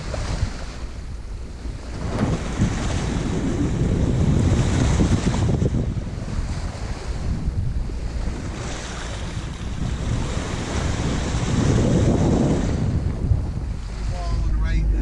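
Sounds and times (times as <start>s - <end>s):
sea water rushing: 0.0s - 15.0s
wind buffeting microphone: 0.0s - 15.0s.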